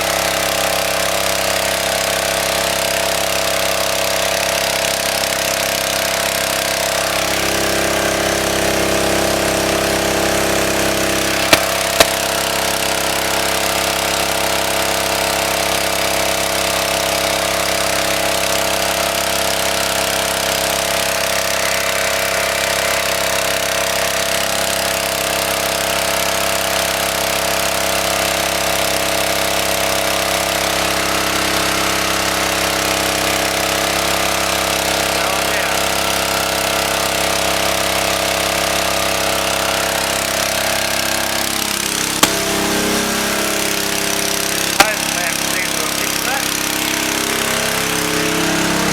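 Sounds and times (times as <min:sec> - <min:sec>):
small petrol engine running: 0:00.0 - 0:48.9
sharp clicks: 0:11.5 - 0:12.2.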